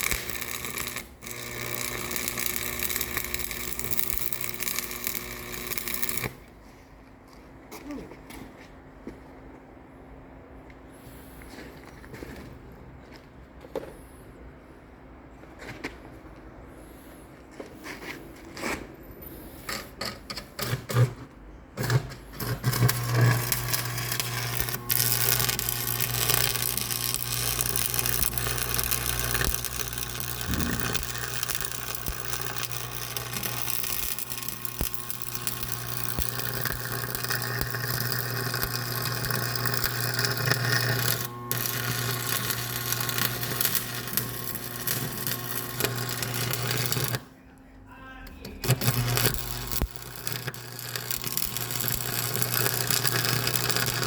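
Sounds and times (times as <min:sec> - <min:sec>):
machine humming and rattling: 0:00.0 - 0:06.5, 0:21.8 - 0:47.3, 0:48.5 - 0:54.0.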